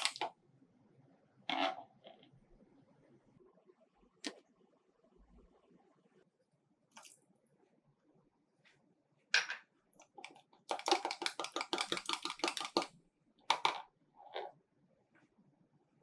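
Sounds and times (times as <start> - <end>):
utensils clicking in a bowl: 10.2 - 12.9.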